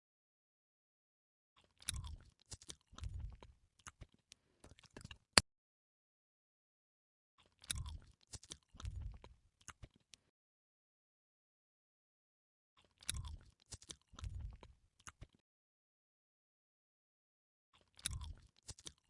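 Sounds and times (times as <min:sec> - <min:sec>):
crunchy biting and chewing: 0:01.6 - 0:04.2, 0:07.4 - 0:10.0, 0:12.8 - 0:15.4, 0:17.8 - 0:19.0.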